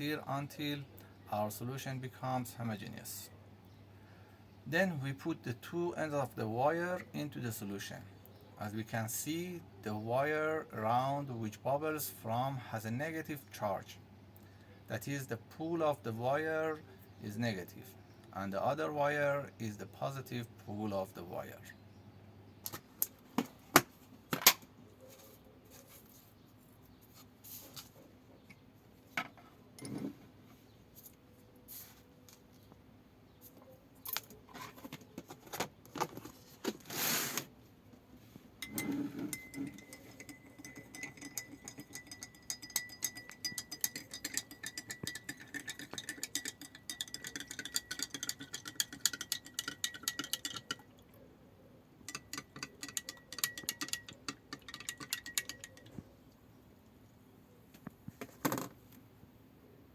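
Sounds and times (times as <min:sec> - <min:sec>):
spoon clinking against glass: 0:38.6 - 0:50.9, 0:52.0 - 0:56.0.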